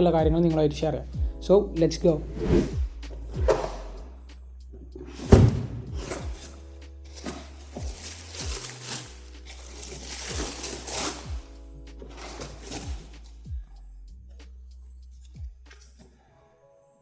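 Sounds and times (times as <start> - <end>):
crisp hi-hat: 0.0 - 16.0
punchy kick drums: 0.1 - 0.6, 1.2 - 1.4, 2.7 - 4.1, 5.3 - 6.4, 11.3 - 11.6, 12.9 - 13.8, 15.4 - 15.7.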